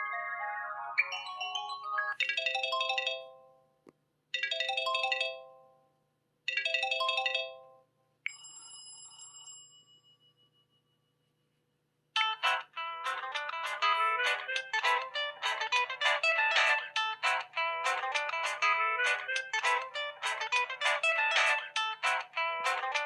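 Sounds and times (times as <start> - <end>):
phone ringtone chime: 0.0 - 3.6, 4.4 - 5.7, 6.5 - 10.9
high bell tone: 8.3 - 11.4.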